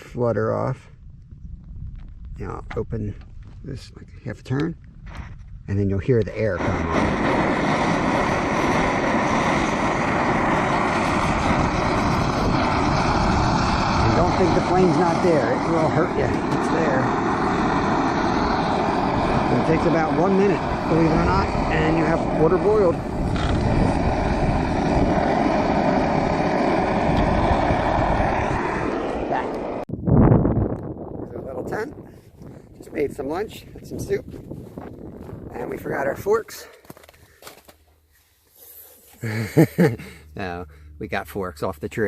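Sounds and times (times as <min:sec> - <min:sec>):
camp stove burner hissing: 0:06.2 - 0:29.9.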